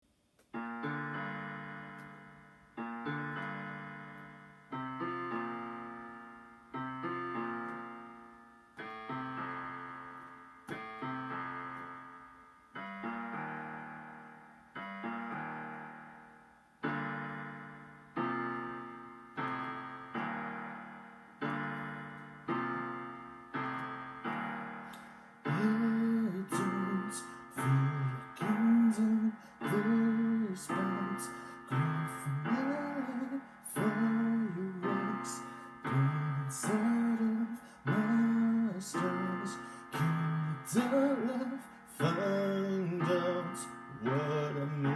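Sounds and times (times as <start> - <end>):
piano playing slow chords: 0.5 - 44.9
person singing: 25.5 - 44.9.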